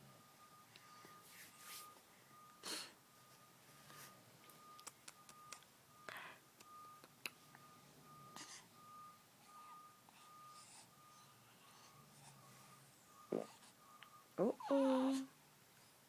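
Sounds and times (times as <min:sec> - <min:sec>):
faint high electronic tone: 0:00.0 - 0:15.4.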